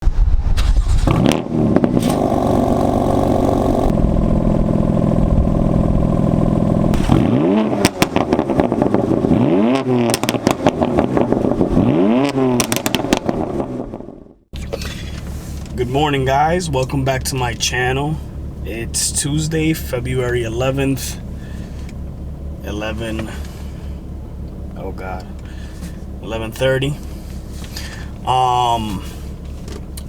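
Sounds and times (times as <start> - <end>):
exhaust cracks: 0.0 - 30.0
car engine idling and revving: 0.6 - 30.0.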